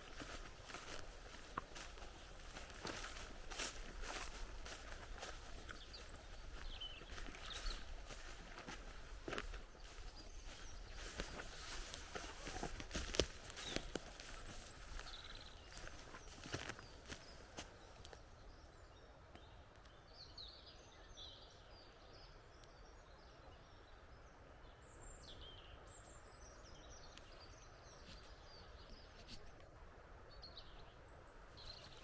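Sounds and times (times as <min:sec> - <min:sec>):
birds chirping and trilling: 0:00.0 - 0:18.7.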